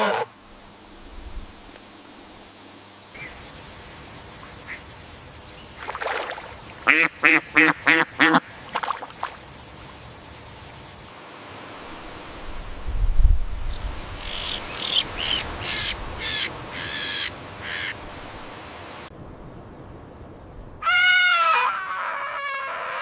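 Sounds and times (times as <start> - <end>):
duck quacking: 6.8 - 8.5.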